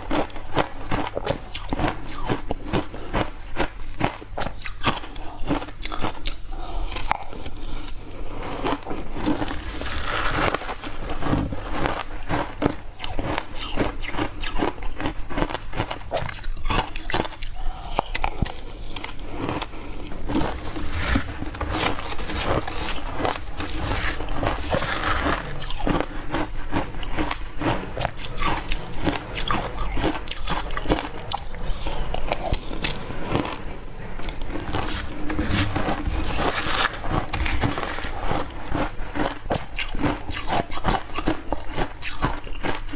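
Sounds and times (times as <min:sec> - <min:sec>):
ice crunched between teeth: 0:09.2 - 0:42.9.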